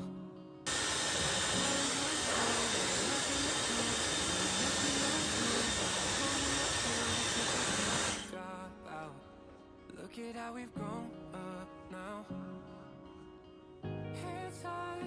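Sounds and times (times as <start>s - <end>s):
appliance motor rushing: 0.7s - 8.3s.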